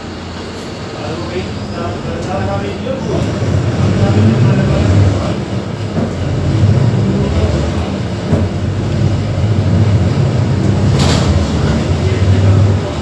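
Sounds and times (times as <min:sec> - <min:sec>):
bus diesel engine rumbling: 0:00.0 - 0:13.0.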